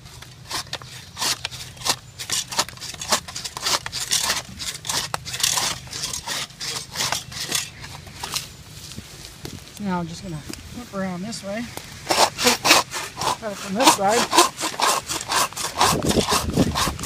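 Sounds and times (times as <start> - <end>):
hand saw rasping through wet wood: 0.1 - 7.9, 12.0 - 17.0.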